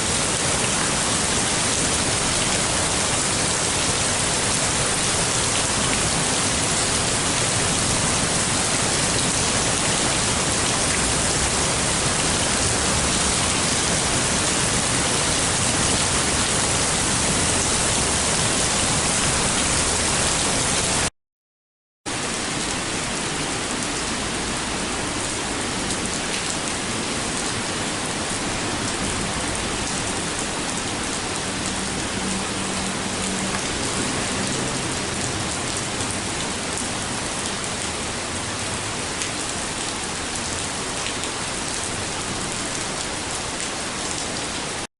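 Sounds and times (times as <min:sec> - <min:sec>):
heavy rain falling: 0:00.0 - 0:21.1, 0:22.1 - 0:44.9.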